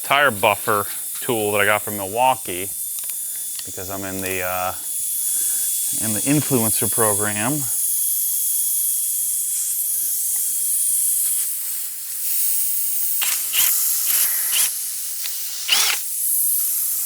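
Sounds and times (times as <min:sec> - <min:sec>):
cordless power tool drilling: 0:13.2 - 0:16.1.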